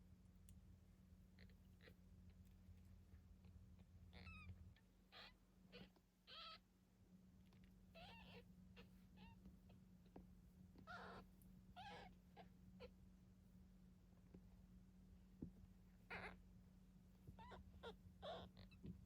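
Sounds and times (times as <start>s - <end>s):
kittens mewing: 10.8s - 12.9s, 17.3s - 18.9s.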